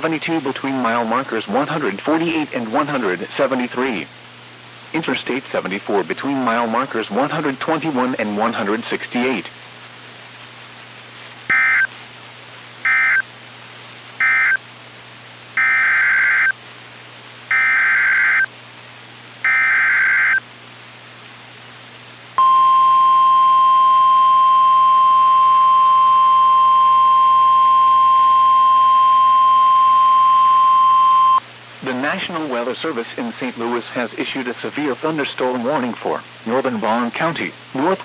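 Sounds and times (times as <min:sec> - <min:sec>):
screechy data bursts: 0:11.5 - 0:11.9, 0:12.8 - 0:13.2, 0:15.6 - 0:16.6, 0:17.5 - 0:18.5, 0:19.4 - 0:20.4
single-tone warning alarm: 0:11.5 - 0:11.9, 0:12.9 - 0:13.2, 0:14.2 - 0:14.6, 0:15.6 - 0:16.5, 0:17.5 - 0:18.5, 0:19.4 - 0:20.4, 0:22.4 - 0:31.4.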